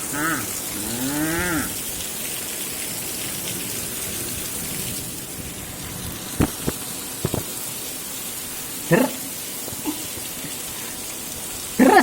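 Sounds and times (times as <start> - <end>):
steady rain falling: 0.0 - 12.0
sharp knocks: 6.4 - 7.5.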